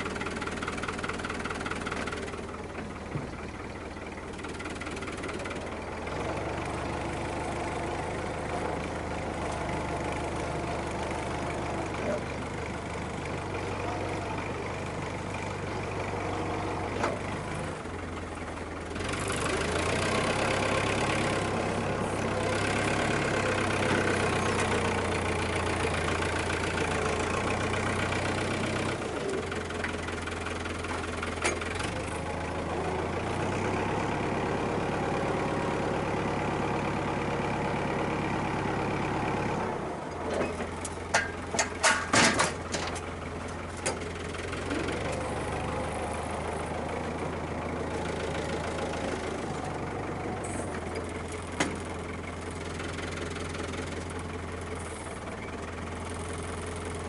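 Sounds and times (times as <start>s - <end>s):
tractor diesel engine working: 0.0s - 57.0s.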